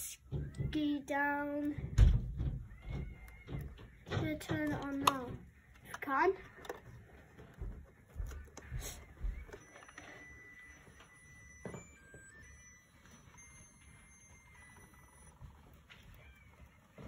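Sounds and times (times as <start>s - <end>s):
faint electronic beeping tune: 7.6s - 17.0s.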